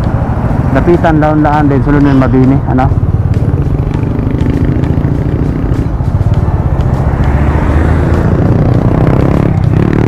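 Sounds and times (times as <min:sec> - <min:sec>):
vehicle rumbling in traffic: 0:00.0 - 0:10.0.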